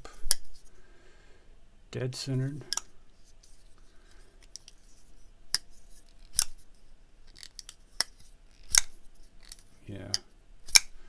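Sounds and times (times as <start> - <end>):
pocket knife blade clicking: 0.1 - 0.6, 5.5 - 6.6, 7.3 - 9.7, 10.7 - 11.0.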